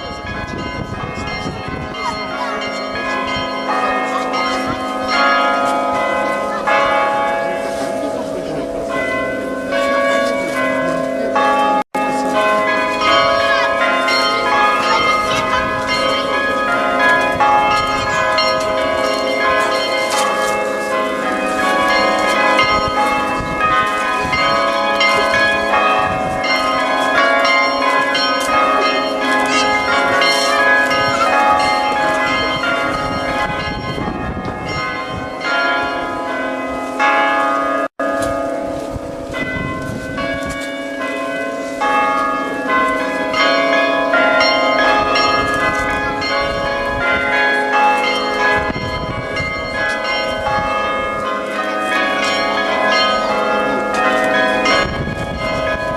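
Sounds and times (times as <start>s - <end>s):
church bells pealing: 0.0s - 55.9s.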